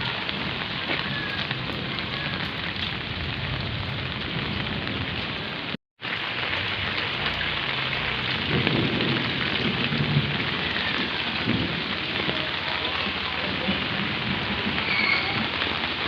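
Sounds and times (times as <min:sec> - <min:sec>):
heavy rain pouring: 0:00.0 - 0:16.0.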